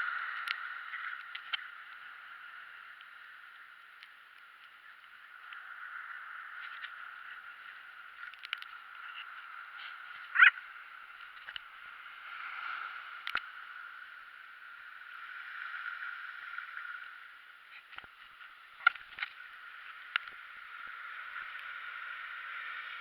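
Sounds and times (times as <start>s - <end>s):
faint clicks: 0.0s - 11.9s, 12.6s - 23.0s
wavering high-pitched cry: 10.3s - 10.6s.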